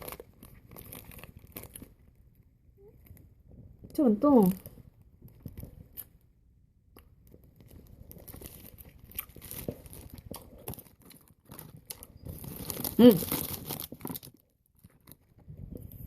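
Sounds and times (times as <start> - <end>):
plastic wrapper crinkling: 0.0 - 2.2, 7.3 - 15.4.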